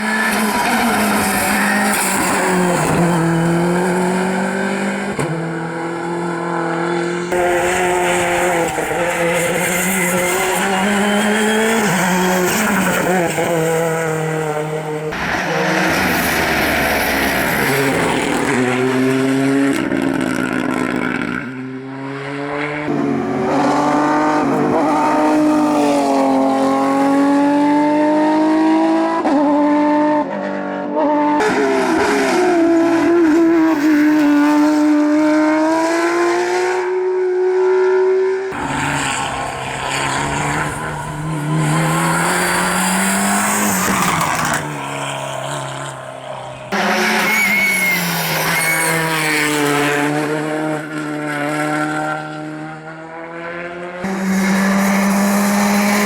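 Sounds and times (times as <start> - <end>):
rally car engines revving: 0.0 - 56.0
tyre squeal: 38.6 - 50.0.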